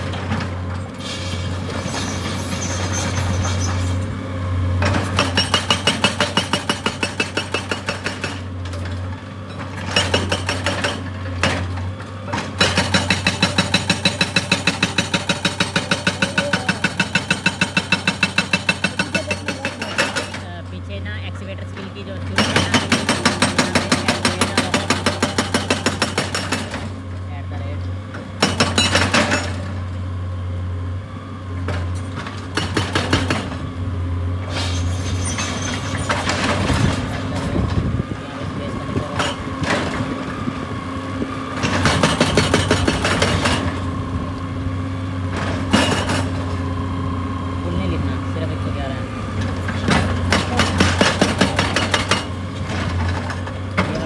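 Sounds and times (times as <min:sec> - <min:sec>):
hydraulic rock breaker hammering: 0:00.0 - 0:30.0, 0:31.6 - 0:54.0
machine engine hum: 0:00.0 - 0:54.0
clinks and knocks: 0:04.8 - 0:20.5, 0:34.4 - 0:40.5, 0:45.3 - 0:46.7, 0:49.4 - 0:54.0.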